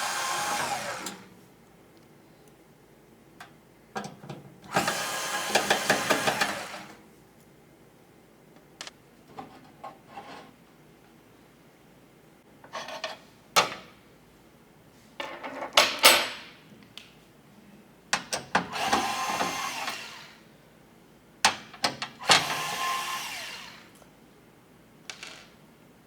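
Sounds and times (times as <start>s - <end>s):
electric screwdriver whine: 0.0s - 1.2s, 4.7s - 6.9s, 18.8s - 20.4s, 22.2s - 23.9s.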